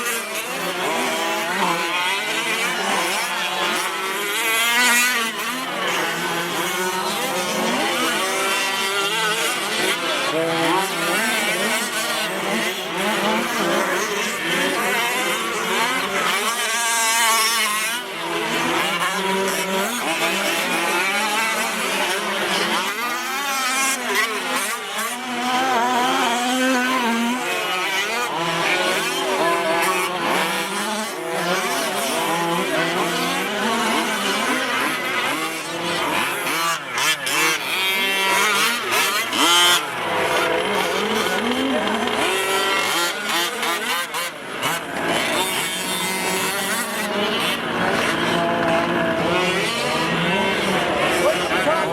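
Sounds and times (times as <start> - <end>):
small engines revving: 0.0 - 51.9.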